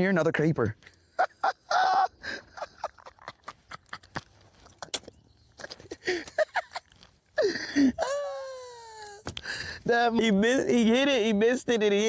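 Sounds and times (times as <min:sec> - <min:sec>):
fishing gear clicking and tapping: 0:09.0 - 0:09.5.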